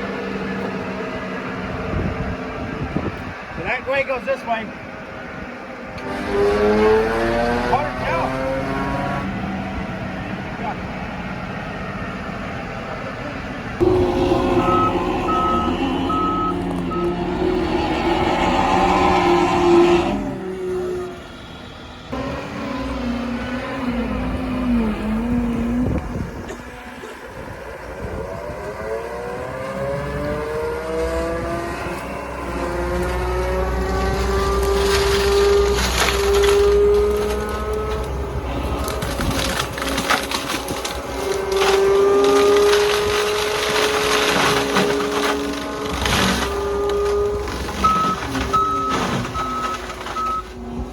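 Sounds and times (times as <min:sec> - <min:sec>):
skid steer engine running: 0:00.0 - 0:50.9
backup alarm beeping: 0:13.8 - 0:17.6, 0:47.8 - 0:50.5
mulcher crackling and splintering wood: 0:13.8 - 0:20.1, 0:31.9 - 0:50.9
machine whine rising in pitch: 0:13.8 - 0:20.4.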